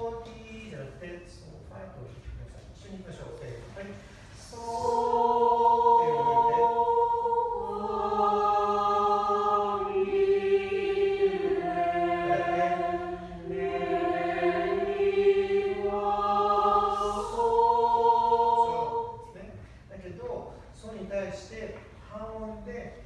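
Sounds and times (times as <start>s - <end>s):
choir singing sustained chords: 4.3s - 19.4s.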